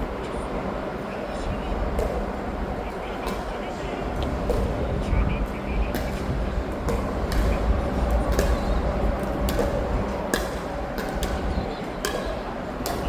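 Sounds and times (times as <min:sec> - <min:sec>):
steady low rumble: 0:00.0 - 0:13.0
pickleball paddles striking ball: 0:02.0 - 0:02.4, 0:03.2 - 0:03.6, 0:04.2 - 0:04.8, 0:05.9 - 0:13.0.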